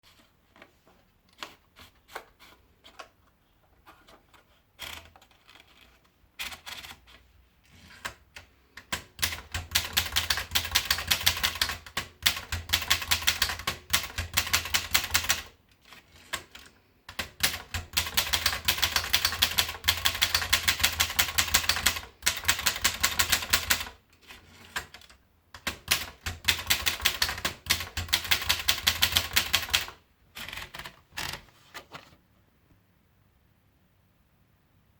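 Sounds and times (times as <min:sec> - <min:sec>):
manual typewriter typing: 0:04.8 - 0:07.2, 0:07.8 - 0:31.4.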